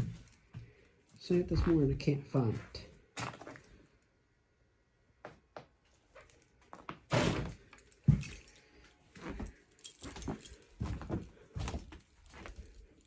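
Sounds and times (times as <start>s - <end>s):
knocks and clatters of rummaging: 6.8s - 12.8s.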